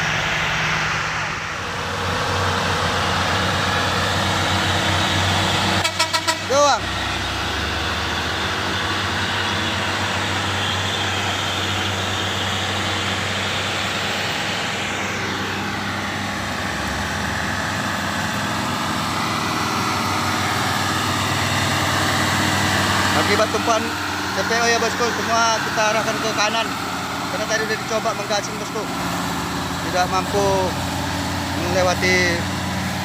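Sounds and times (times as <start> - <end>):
engine whine: 0.0 - 33.0
truck diesel engines under load: 0.0 - 33.0.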